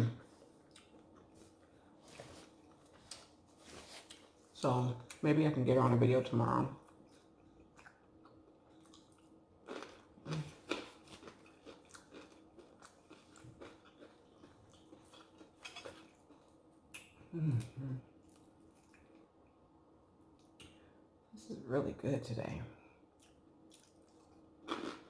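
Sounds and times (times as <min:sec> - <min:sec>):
chewing and crunching food: 0:00.2 - 0:05.2, 0:06.7 - 0:19.4, 0:23.2 - 0:25.0.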